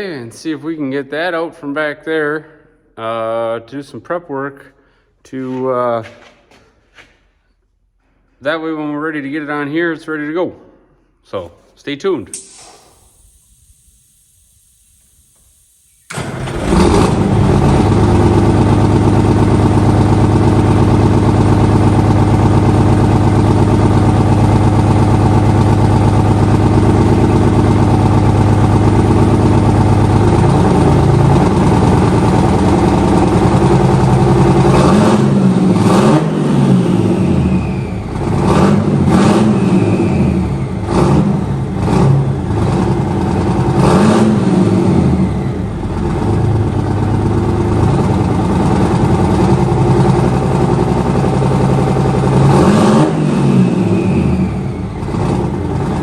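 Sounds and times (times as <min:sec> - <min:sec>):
vehicle engine running and revving: 0:16.1 - 0:56.0.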